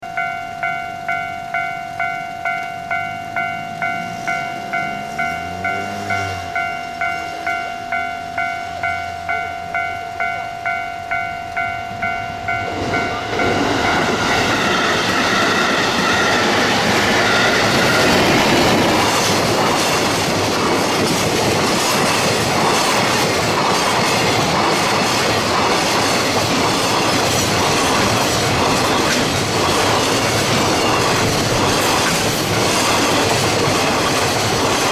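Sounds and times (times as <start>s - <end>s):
freight train wheel rumble: 0.0s - 34.9s
level-crossing warning bell: 0.0s - 34.9s
wheels clacking over rail joints: 11.1s - 34.9s.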